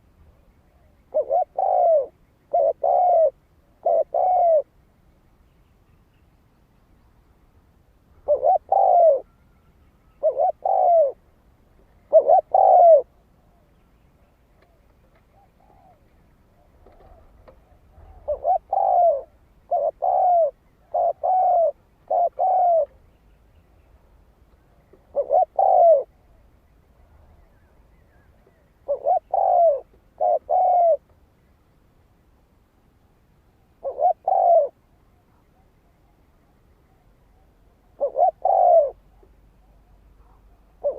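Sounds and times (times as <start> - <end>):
dove cooing: 0.0 - 4.8, 8.1 - 13.8, 14.6 - 23.0, 24.8 - 31.1, 33.7 - 35.7, 37.4 - 40.9.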